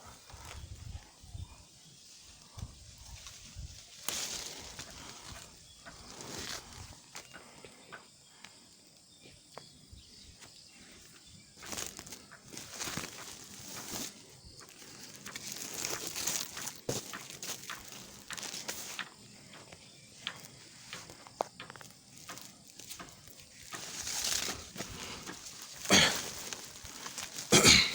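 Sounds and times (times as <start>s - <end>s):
leaves and twigs rustling: 0.0s - 7.6s, 8.4s - 27.9s
twigs clicking and snapping: 2.6s - 6.0s, 11.6s - 27.9s.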